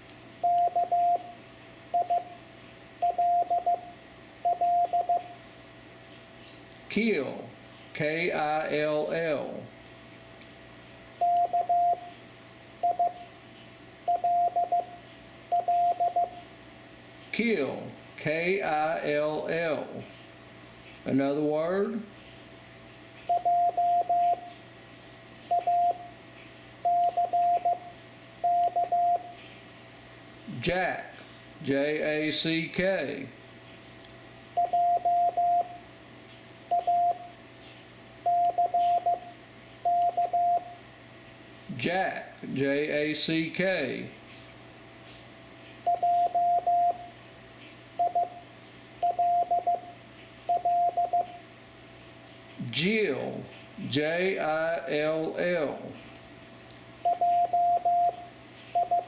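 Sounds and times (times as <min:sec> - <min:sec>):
morse code beeps: 0:00.4 - 0:02.4, 0:03.0 - 0:05.4, 0:11.2 - 0:12.1, 0:12.8 - 0:13.3, 0:14.1 - 0:16.4, 0:23.3 - 0:24.5, 0:25.5 - 0:26.1, 0:26.8 - 0:29.4, 0:34.6 - 0:35.8, 0:36.7 - 0:37.3, 0:38.2 - 0:40.8, 0:45.9 - 0:47.1, 0:48.0 - 0:48.4, 0:49.0 - 0:51.4, 0:57.1 - 0:59.0.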